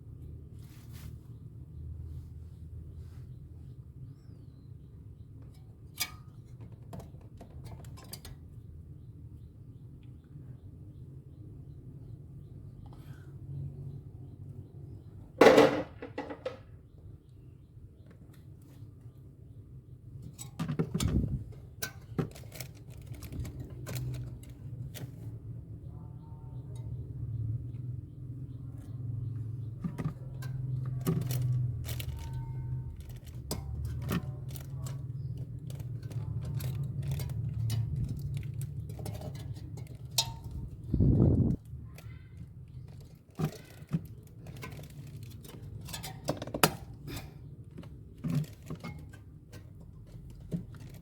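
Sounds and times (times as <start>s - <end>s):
clicks and knocks of tools handling parts: 20.2s - 25.3s, 29.6s - 40.8s, 42.0s - 51.0s.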